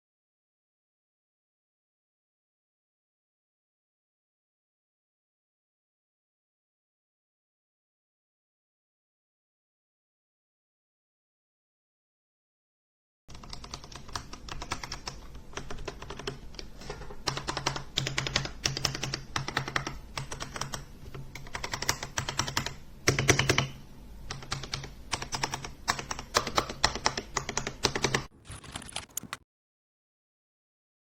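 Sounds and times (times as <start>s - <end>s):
mechanical keyboard typing: 13.3s - 23.7s, 24.3s - 29.4s.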